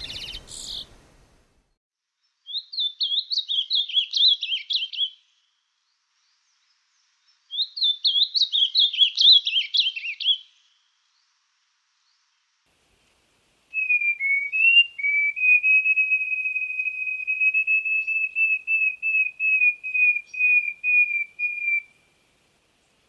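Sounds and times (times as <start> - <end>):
bird whistling song: 0.0 - 1.0, 2.4 - 5.3, 7.5 - 10.6, 13.7 - 22.1.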